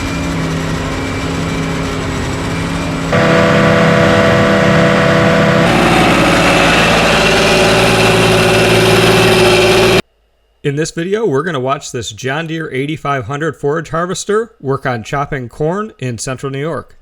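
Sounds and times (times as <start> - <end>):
farm machinery engines running: 0.0 - 10.0.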